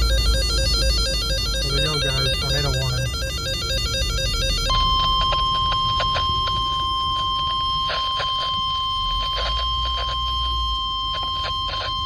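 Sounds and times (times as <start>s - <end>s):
steady warning alarm tone: 0.0s - 12.0s
radio static crackling: 1.5s - 3.6s.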